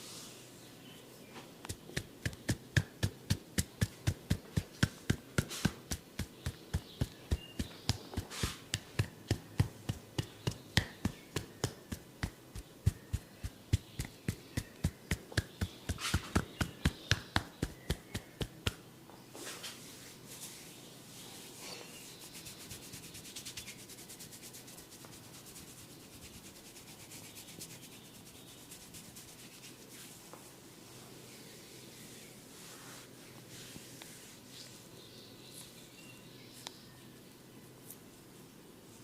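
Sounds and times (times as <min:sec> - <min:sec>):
hands slapping head and neck: 0:01.7 - 0:18.8.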